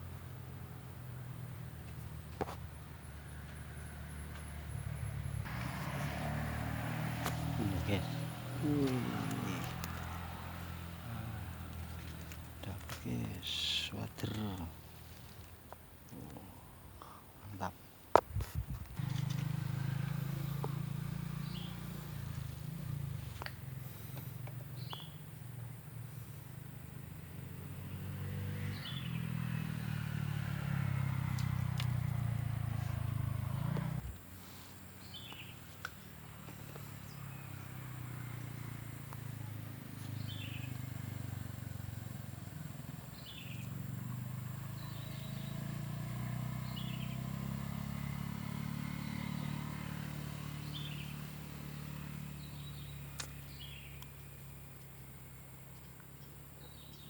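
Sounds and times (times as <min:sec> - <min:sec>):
distant engine hum: 0:00.0 - 0:18.3, 0:18.9 - 0:57.0
bird chirping: 0:20.4 - 0:22.8, 0:23.5 - 0:25.7, 0:27.8 - 0:29.7, 0:35.0 - 0:35.7, 0:36.9 - 0:41.0, 0:42.6 - 0:47.4, 0:50.5 - 0:51.4, 0:52.2 - 0:57.0.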